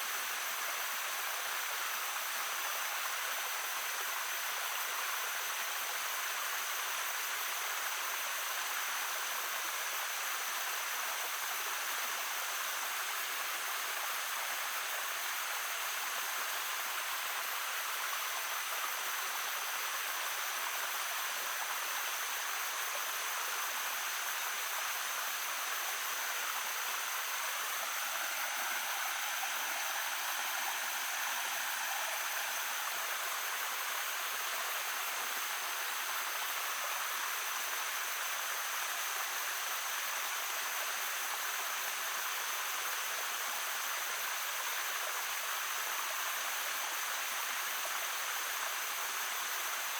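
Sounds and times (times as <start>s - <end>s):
stream babbling: 16.7s - 39.9s.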